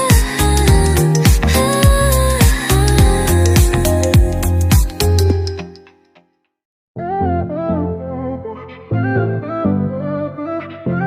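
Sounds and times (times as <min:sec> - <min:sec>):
pop music with kick drum and synth: 0:00.0 - 0:05.7.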